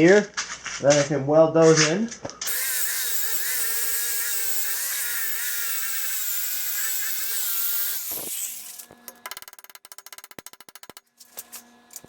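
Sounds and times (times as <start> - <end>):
grinder whining against steel: 2.4 - 12.0.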